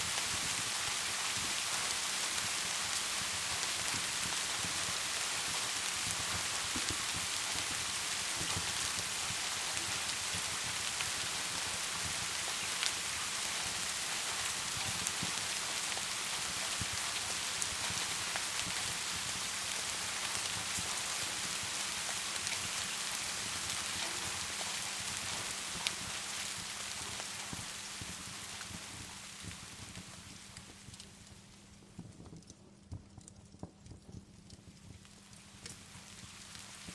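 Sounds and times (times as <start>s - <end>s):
steady rain: 0.0s - 32.5s, 34.1s - 36.9s
wood fire crackling: 0.0s - 36.9s.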